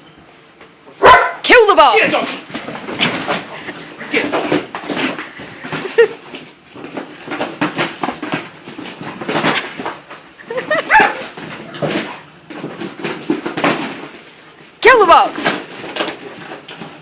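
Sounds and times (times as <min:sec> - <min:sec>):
dog barking: 0:01.0 - 0:01.4, 0:10.8 - 0:11.3
dog tearing cardboard: 0:02.3 - 0:14.8, 0:15.4 - 0:17.0.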